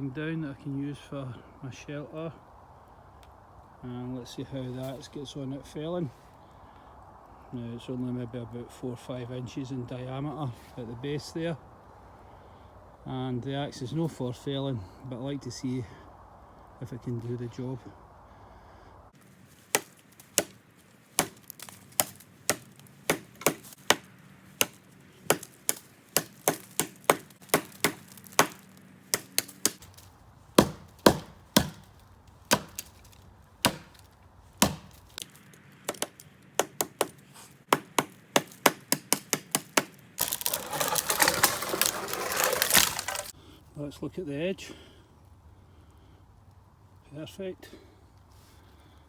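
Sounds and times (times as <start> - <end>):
tree falling with rustling crash: 19.2 - 36.3, 39.7 - 43.3
axe chopping wood: 19.7 - 35.3, 35.9 - 43.3.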